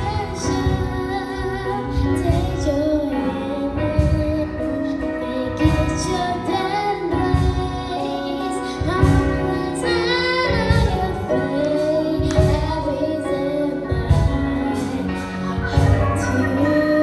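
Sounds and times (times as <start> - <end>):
music with steady beat: 0.0 - 17.0
children and women singing: 5.8 - 17.0.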